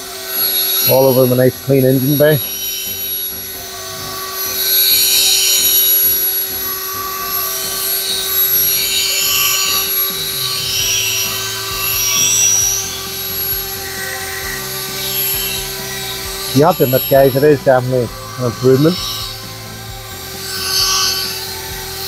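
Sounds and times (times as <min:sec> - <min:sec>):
electric drill motor whine: 0:00.0 - 0:22.0
polishing pad scrubbing hiss: 0:00.0 - 0:22.0.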